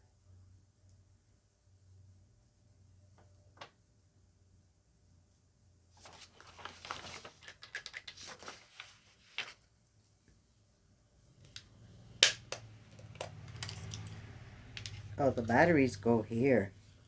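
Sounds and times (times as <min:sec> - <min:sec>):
plastic packaging rustles: 0:06.0 - 0:09.7.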